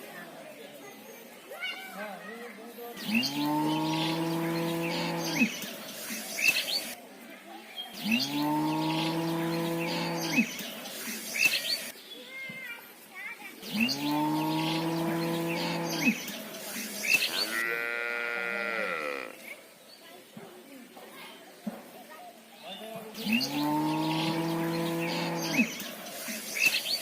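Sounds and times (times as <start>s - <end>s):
cow mooing: 3.3s - 5.5s, 8.3s - 10.5s, 17.5s - 19.4s, 23.3s - 25.7s.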